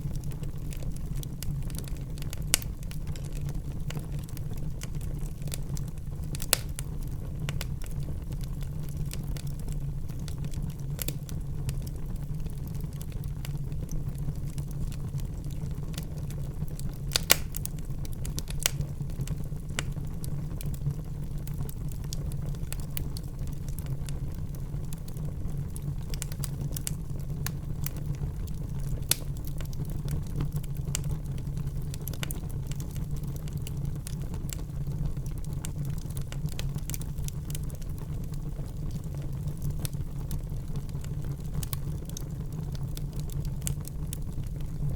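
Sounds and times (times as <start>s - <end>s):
fire crackling and popping: 0.0s - 44.9s.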